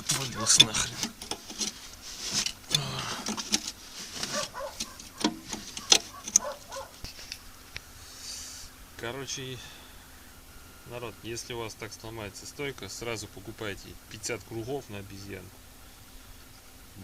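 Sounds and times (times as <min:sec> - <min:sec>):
metal tools clinking: 0:00.0 - 0:06.9
person muttering: 0:02.7 - 0:03.4.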